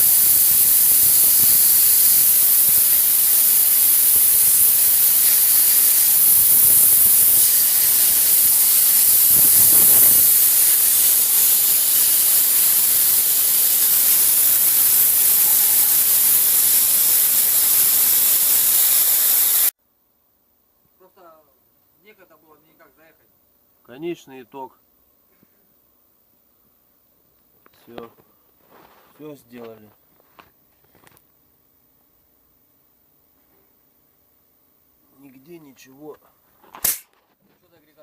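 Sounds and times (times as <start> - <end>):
spray gun loud hiss: 0.0 - 19.8.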